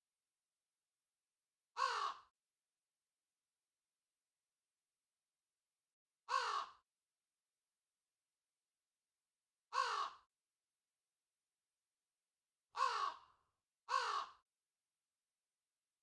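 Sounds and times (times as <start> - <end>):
crow cawing: 1.8 - 2.3, 6.3 - 6.8, 9.7 - 10.3, 12.7 - 14.4.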